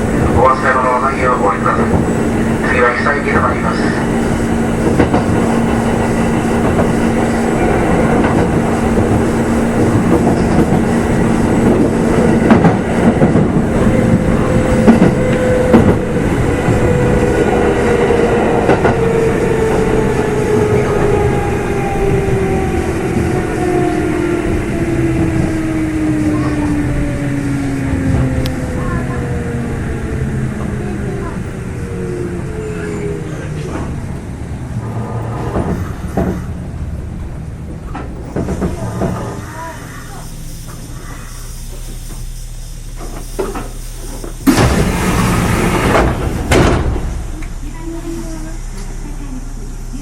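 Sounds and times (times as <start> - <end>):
train wheel clatter: 1.6 - 19.9, 34.8 - 36.8, 37.4 - 42.4.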